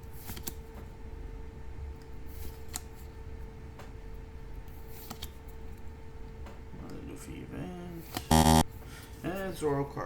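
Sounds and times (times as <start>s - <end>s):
trading cards flipped by hand: 0.2s - 0.6s, 4.9s - 5.4s.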